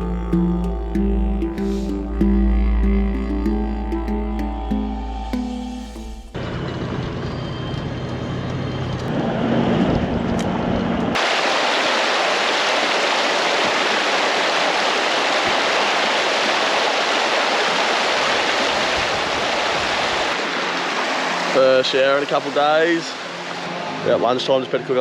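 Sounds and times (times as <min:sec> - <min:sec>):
creek running water: 0:00.0 - 0:06.3, 0:11.2 - 0:25.0
background music: 0:00.0 - 0:06.4.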